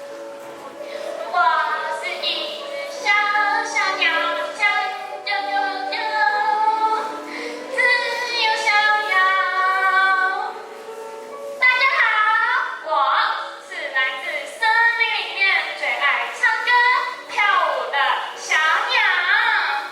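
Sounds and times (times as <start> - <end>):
high voices singing: 0.9 - 10.5.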